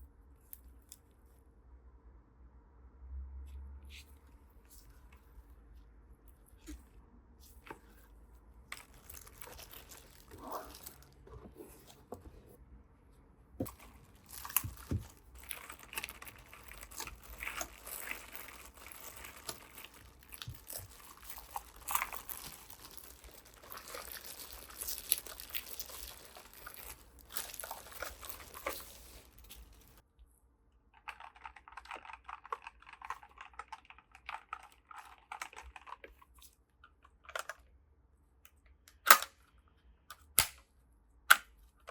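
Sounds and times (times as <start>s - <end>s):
packaging crinkling and rustling: 8.6s - 12.1s, 13.6s - 30.0s.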